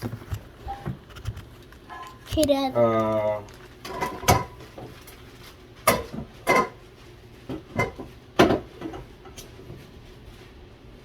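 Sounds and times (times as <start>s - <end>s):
utensils clanking on cookware: 3.8s - 4.8s, 5.8s - 6.8s.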